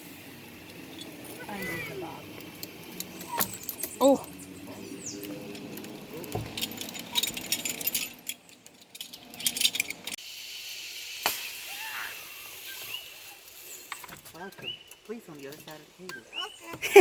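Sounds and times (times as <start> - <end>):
steady high hiss: 0.0 - 17.0
metal harness hardware clinking: 0.6 - 10.2, 13.8 - 15.8.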